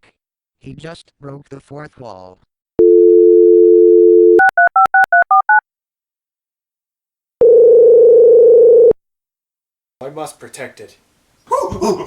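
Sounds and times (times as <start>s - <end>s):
buzzy telephone ringing tone: 2.8s - 4.6s, 7.4s - 9.0s
telephone dial tone: 2.8s - 5.6s, 7.4s - 9.0s
touch-tone dialing beeps: 2.8s - 5.6s.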